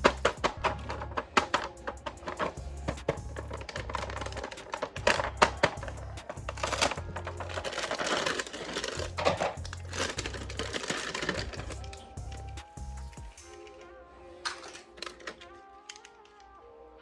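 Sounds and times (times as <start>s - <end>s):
music with repeating bass line: 0.0s - 13.4s.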